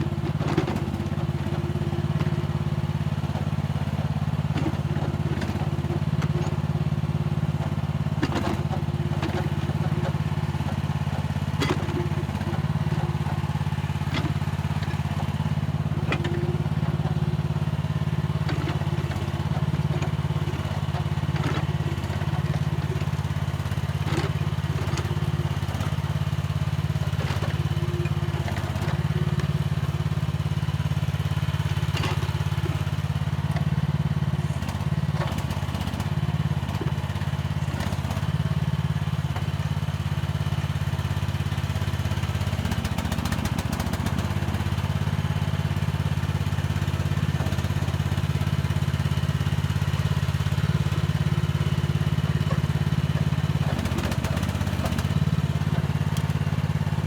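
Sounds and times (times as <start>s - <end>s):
excavator engine running: 0.0s - 57.0s
digging knocks and clatter: 8.1s - 38.4s, 49.6s - 56.8s.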